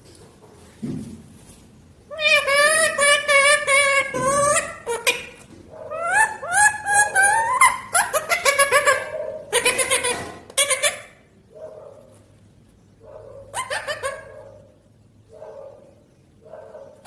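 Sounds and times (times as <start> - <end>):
parrot chattering: 2.1 - 11.4, 13.4 - 14.8.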